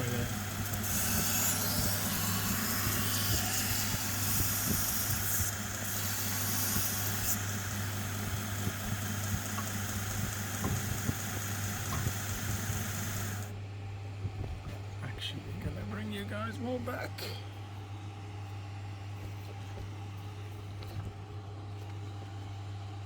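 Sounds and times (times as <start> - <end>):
belt grinder motor hum: 0.0 - 13.5
grinder belt hissing: 0.0 - 13.5.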